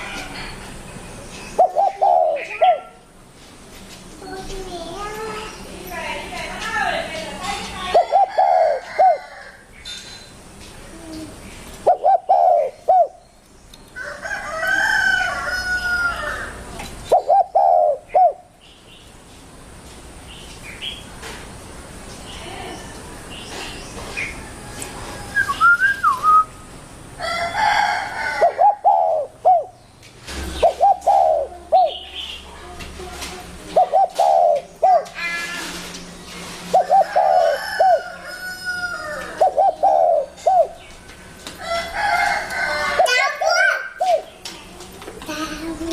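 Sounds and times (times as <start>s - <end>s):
dove cooing: 1.6s - 3.0s, 7.9s - 9.4s, 10.9s - 13.2s, 16.2s - 18.5s, 27.4s - 29.8s, 30.4s - 32.8s, 33.6s - 35.8s, 36.7s - 38.2s, 39.2s - 40.8s.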